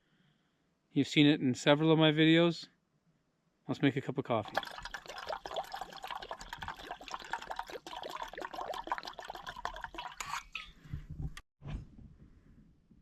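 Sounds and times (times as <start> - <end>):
water pouring into a pot: 4.4 - 10.7.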